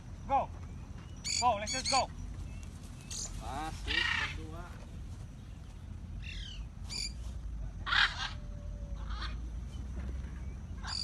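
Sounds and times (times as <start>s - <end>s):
low steady rumble: 0.0s - 11.0s
parrots squawking: 1.2s - 2.1s, 3.2s - 4.5s, 6.2s - 7.2s, 7.8s - 9.4s.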